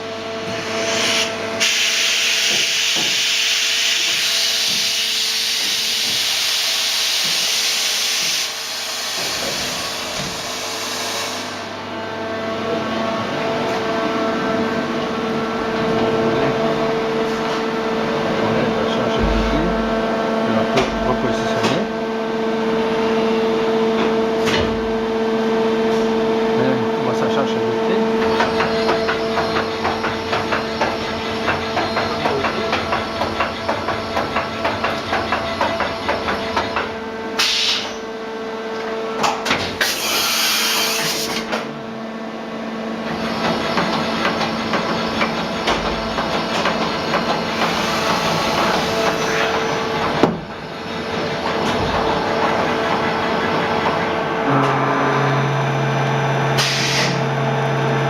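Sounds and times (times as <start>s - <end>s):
machine motor hum: 2.4s - 58.0s
machine knocks: 19.1s - 20.0s, 28.2s - 37.0s, 50.0s - 50.7s.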